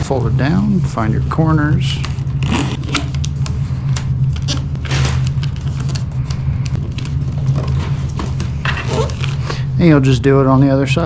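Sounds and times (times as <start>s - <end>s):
steady low hum: 0.0s - 11.0s
wrapping paper crinkling: 1.9s - 9.7s.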